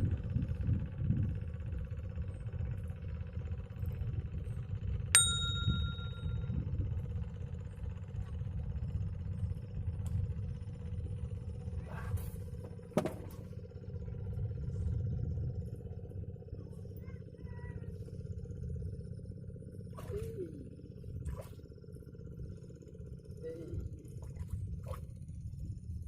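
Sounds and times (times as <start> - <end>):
faint steady hum: 0.0 - 26.0
steady low rumble: 0.0 - 26.0
short metallic ding: 5.2 - 6.5.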